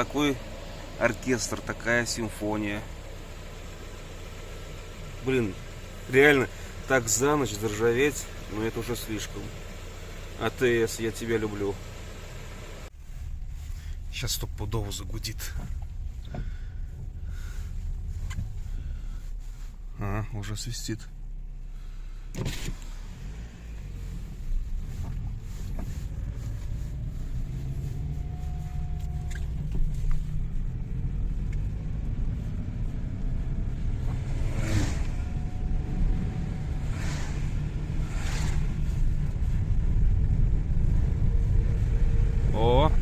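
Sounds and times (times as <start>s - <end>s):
car running hum: 0.0s - 43.0s
brake discs scraping whistle: 28.0s - 29.7s.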